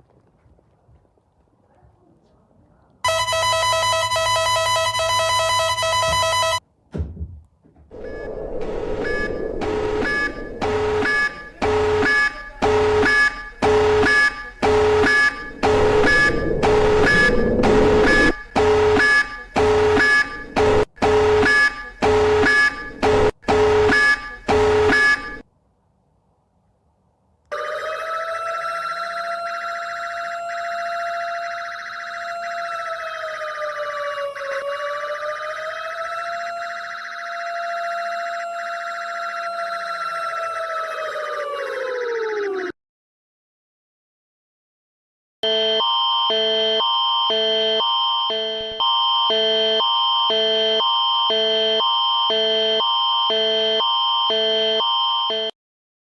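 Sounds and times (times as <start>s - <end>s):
harsh alarm tone: 3.1s - 6.6s, 7.9s - 25.4s, 29.0s - 42.6s, 45.4s - 55.5s
pulsing alarm beeping: 3.1s - 6.6s, 8.0s - 25.4s, 29.2s - 39.9s, 45.4s - 55.5s
rising alarm tone: 3.1s - 6.6s, 7.9s - 25.4s, 27.5s - 42.8s, 45.4s - 55.5s.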